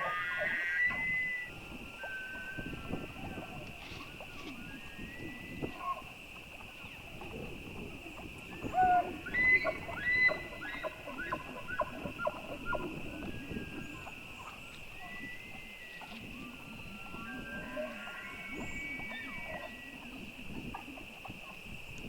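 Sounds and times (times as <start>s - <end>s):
elk bugling: 6.8s - 21.6s.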